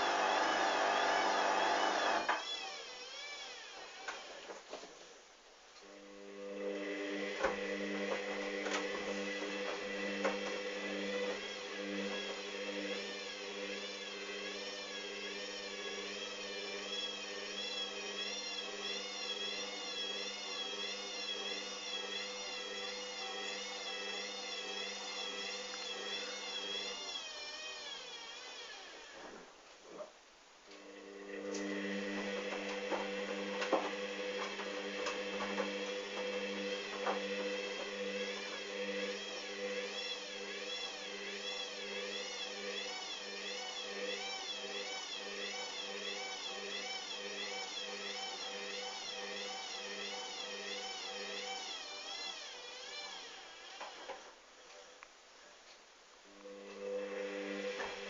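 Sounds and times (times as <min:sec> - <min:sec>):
washing machine motor whining: 0:00.0 - 0:04.5, 0:05.8 - 0:29.4, 0:30.8 - 0:54.3, 0:56.4 - 0:58.0
wavering high whine: 0:56.3 - 0:58.0.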